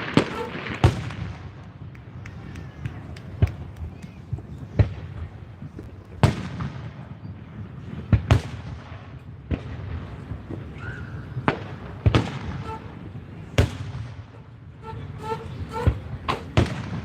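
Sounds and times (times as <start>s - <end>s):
fireworks bursting with bangs: 0.0s - 17.0s.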